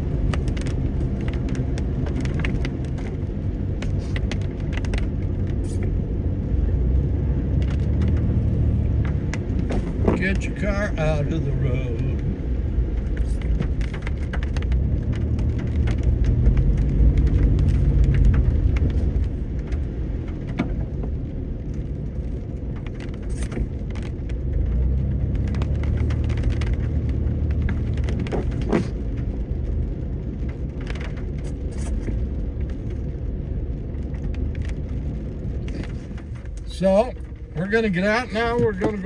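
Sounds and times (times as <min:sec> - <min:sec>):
car engine and tyre rumble: 0:00.0 - 0:39.0.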